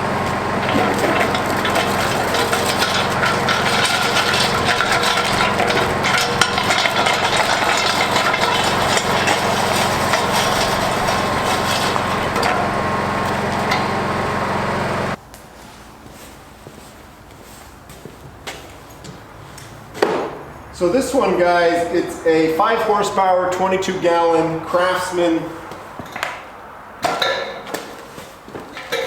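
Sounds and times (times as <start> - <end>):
generator engine idling: 0.0 - 15.2.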